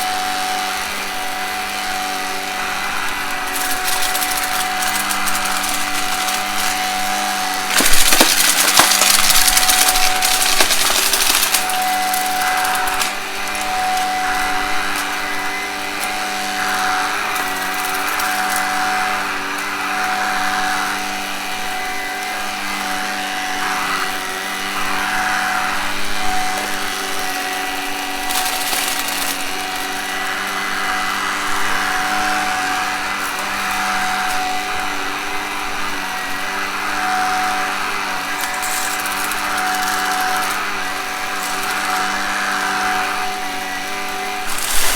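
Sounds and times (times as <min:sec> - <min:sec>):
vacuum cleaner motor humming: 0:00.0 - 0:44.9
debris crackling in vacuum: 0:02.0 - 0:19.7, 0:24.4 - 0:35.4, 0:38.2 - 0:44.9.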